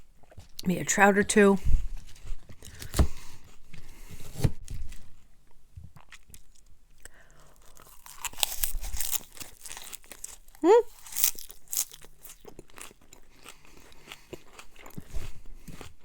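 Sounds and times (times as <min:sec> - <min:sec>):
person chewing food: 0:00.0 - 0:00.6, 0:05.0 - 0:16.0.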